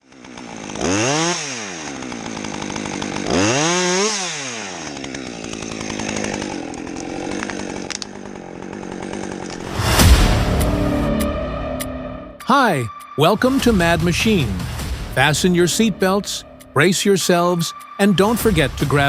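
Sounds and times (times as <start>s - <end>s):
chainsaw engine revving: 0.0s - 10.7s.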